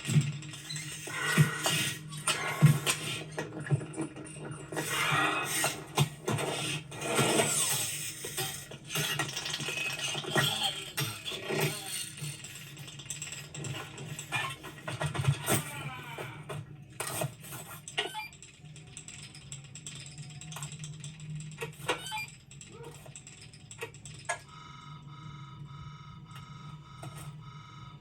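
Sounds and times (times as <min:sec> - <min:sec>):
mechanical clicks and clanks: 0:00.0 - 0:25.0, 0:26.1 - 0:28.0
steady low hum: 0:22.6 - 0:28.0
pulsing electronic tone: 0:24.5 - 0:28.0.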